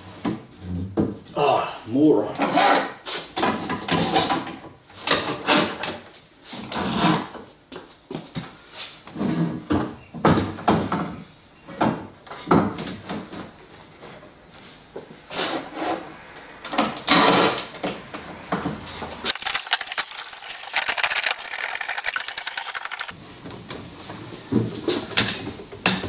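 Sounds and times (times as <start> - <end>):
rapid even clicks: 19.3 - 23.1.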